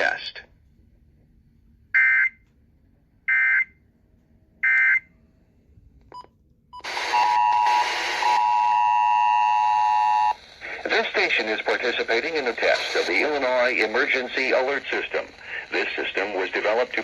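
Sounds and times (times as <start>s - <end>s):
radio hiss: 6.8s - 8.8s, 9.4s - 17.0s.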